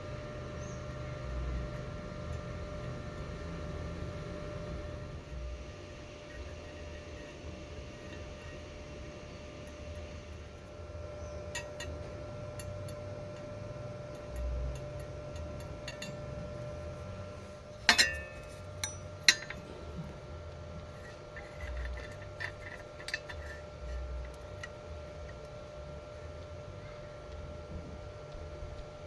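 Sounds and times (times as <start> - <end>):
steady low hum: 0.0 - 29.0
sharp metallic clinks: 17.9 - 19.6.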